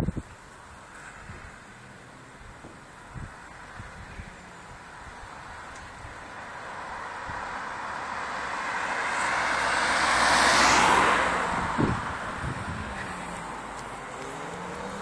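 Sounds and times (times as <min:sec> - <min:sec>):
car driving past at speed: 0:07.4 - 0:15.0.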